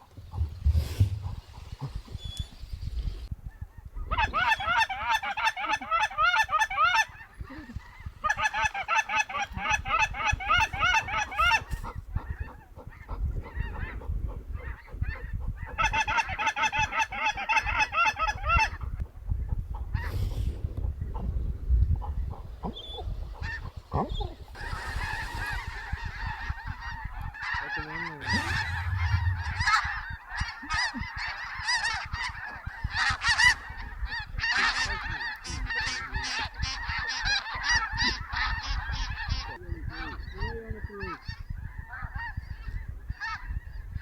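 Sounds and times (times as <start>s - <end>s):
geese honking: 4.1s - 14.0s, 23.4s - 43.4s.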